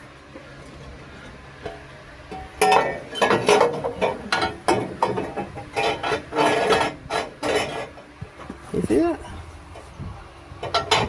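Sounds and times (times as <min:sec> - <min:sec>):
metal clanking and knocking: 0:01.6 - 0:08.6, 0:10.6 - 0:11.0.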